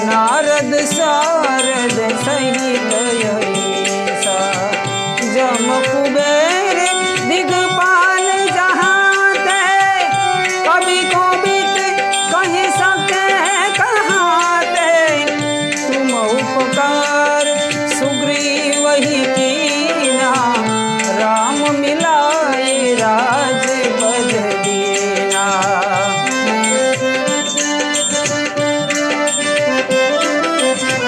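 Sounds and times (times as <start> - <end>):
tabla drumming: 0.0 - 31.0
sliding ornamented melody: 23.7 - 31.0.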